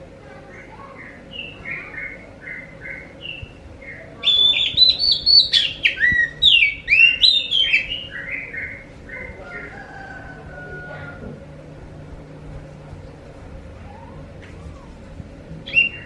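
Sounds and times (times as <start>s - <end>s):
bird singing: 0.4s - 10.1s, 15.6s - 16.0s.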